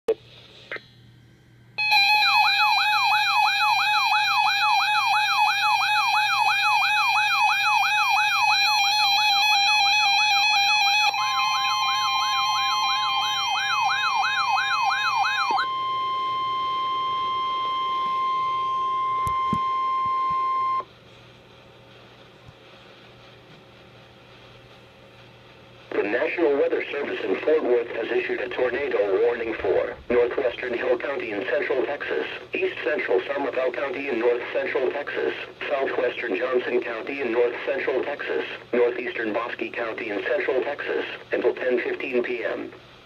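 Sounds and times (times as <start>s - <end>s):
steady alert tone: 1.8s - 7.8s
electronic warbling siren: 1.8s - 20.9s.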